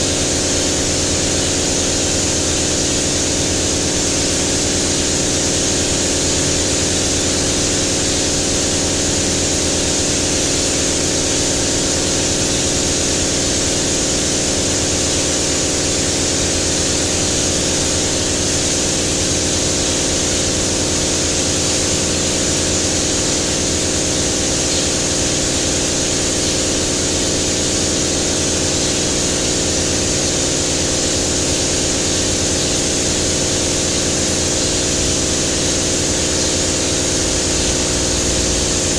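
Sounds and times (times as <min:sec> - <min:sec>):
air hissing from paint sprayer: 0:00.0 - 0:38.9
motor hum: 0:34.4 - 0:38.9.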